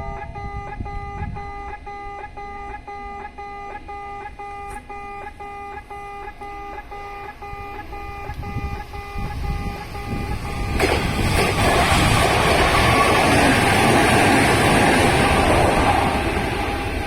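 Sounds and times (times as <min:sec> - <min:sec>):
level-crossing alarm beeping: 0:00.0 - 0:17.0
train rumble and rush: 0:07.6 - 0:17.0.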